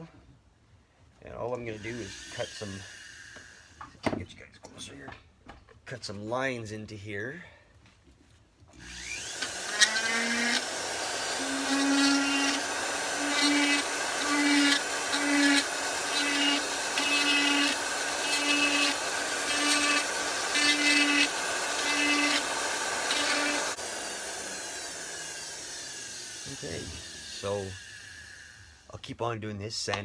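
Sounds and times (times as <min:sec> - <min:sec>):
rotary tool carving wood: 0:01.8 - 0:03.9, 0:08.7 - 0:28.9.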